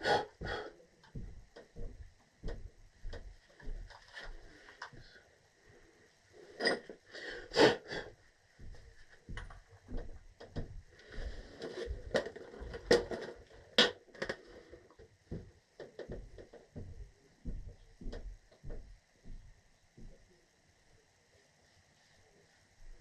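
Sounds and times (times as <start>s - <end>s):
tools clicking and knocking: 11.8s - 14.4s.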